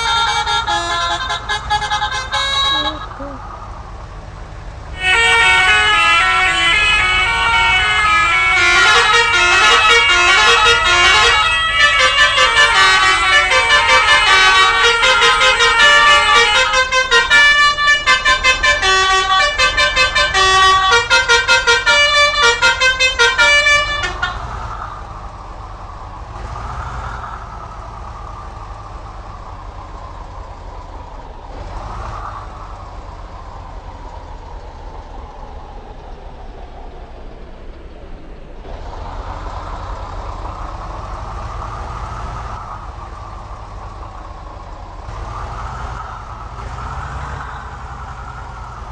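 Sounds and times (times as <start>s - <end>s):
bus air horn playing tune: 0.0s - 3.4s, 4.9s - 24.7s
engine and traffic noise: 0.0s - 48.9s
vehicles passing: 0.0s - 48.9s.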